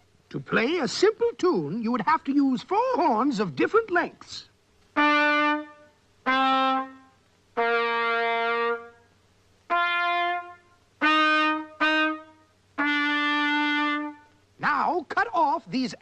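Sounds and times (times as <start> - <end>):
brass horn notes: 5.0 - 9.1, 9.7 - 14.4.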